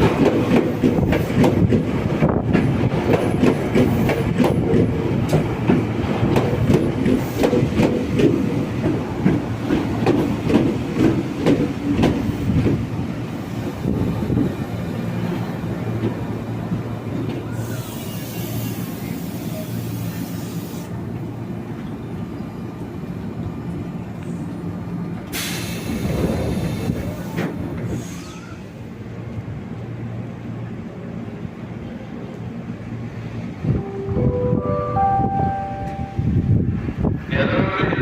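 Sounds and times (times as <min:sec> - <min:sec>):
train equipment humming: 0:00.0 - 0:37.4
train air hiss: 0:17.4 - 0:21.2, 0:25.2 - 0:29.0.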